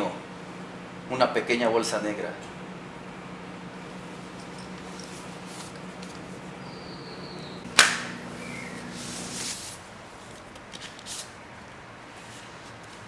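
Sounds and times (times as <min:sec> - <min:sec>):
steady low hum: 0:00.0 - 0:10.4.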